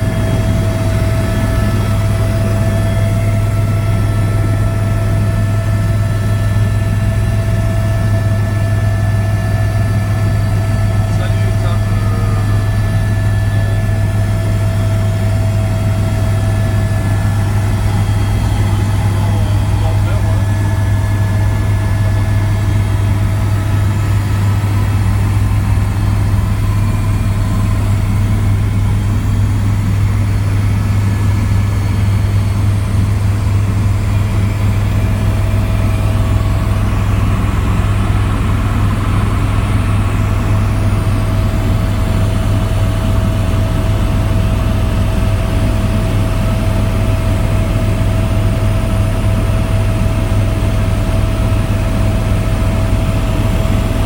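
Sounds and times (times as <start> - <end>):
helicopter turbine and rotor drone: 0.0 - 54.0.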